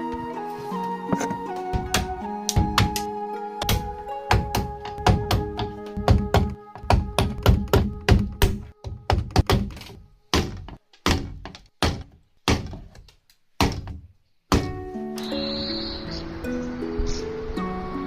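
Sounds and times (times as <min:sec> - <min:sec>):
background music sustained notes: 0:00.0 - 0:10.4, 0:14.5 - 0:18.0
wooden knocks on bamboo: 0:01.1 - 0:14.8.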